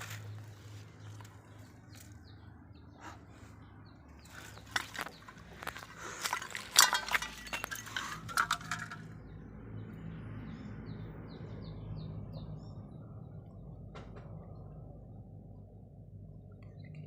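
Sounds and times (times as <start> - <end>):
hard clinks and knocks: 4.3 - 9.1.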